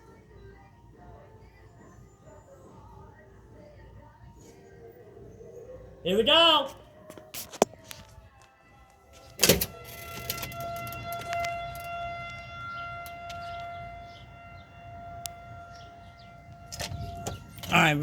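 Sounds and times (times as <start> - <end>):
distant warning siren: 9.0 - 18.0.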